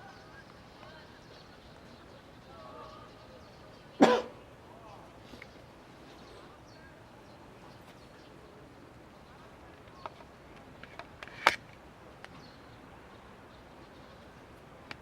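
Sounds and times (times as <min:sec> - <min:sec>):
outdoor ambience: 0:00.0 - 0:15.0.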